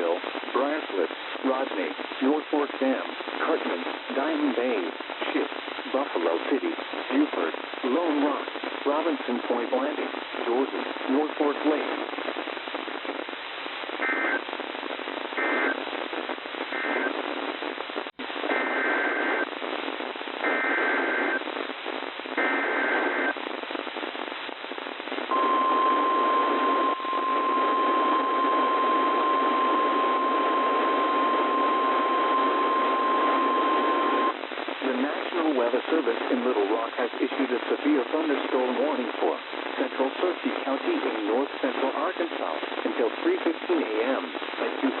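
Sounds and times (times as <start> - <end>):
radio static: 0.0 - 45.0
data buzz bursts: 25.3 - 34.4
steady warning alarm tone: 25.3 - 34.4.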